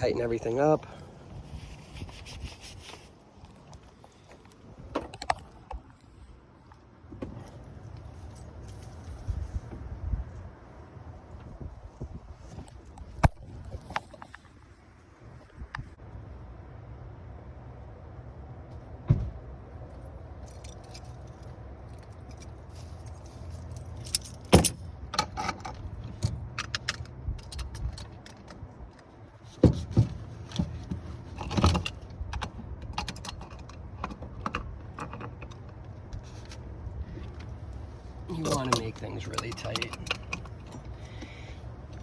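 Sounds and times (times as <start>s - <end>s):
wrench clinking on metal fittings: 38.4s - 41.0s.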